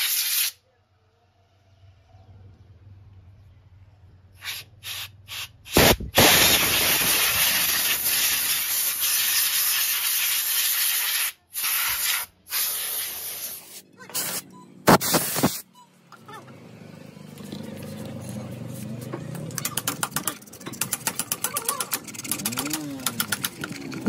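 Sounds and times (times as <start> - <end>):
pressurised spray hissing: 4.4 - 15.6.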